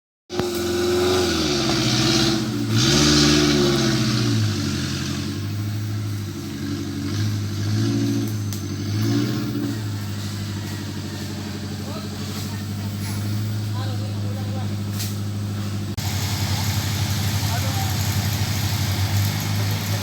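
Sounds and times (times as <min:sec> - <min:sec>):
off-road vehicle engine revving: 0:00.3 - 0:20.0.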